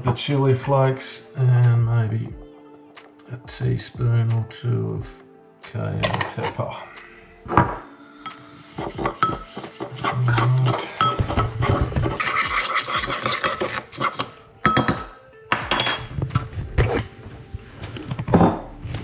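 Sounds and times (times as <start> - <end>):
utensils and dishes clinking: 6.0 - 6.8, 8.3 - 17.1.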